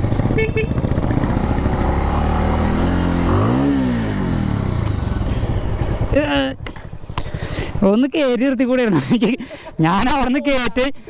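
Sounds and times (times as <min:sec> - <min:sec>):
motorcycle engine revving: 0:00.0 - 0:08.4.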